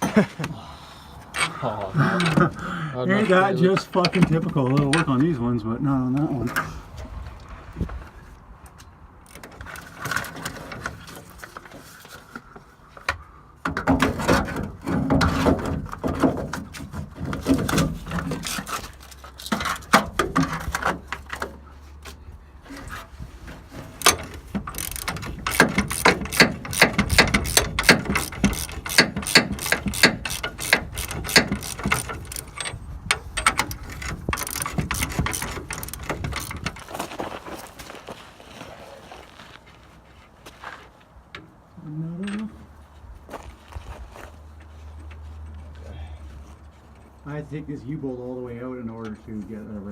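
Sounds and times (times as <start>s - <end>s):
ratchet wrench clicking: 24.0s - 32.8s, 33.4s - 36.7s.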